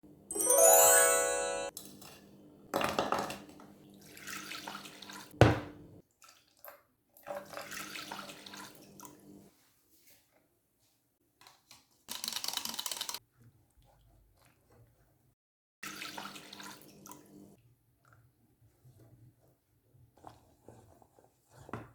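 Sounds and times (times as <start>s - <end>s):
rising musical chime: 0.3s - 1.7s.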